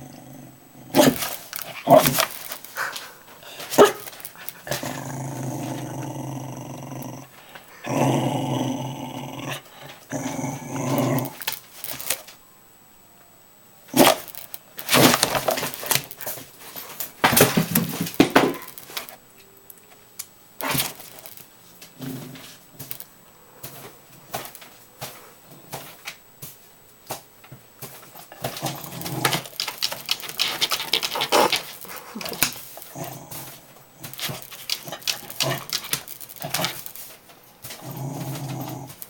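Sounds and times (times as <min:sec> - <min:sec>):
dog growling: 0:00.0 - 0:11.5, 0:28.3 - 0:36.9, 0:37.7 - 0:39.0.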